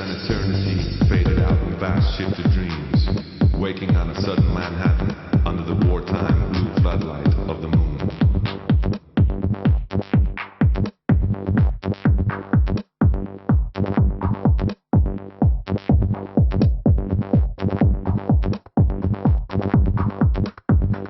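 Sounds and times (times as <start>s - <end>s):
electronic dance music: 0.0s - 21.0s
deep kick drums: 0.3s - 21.0s.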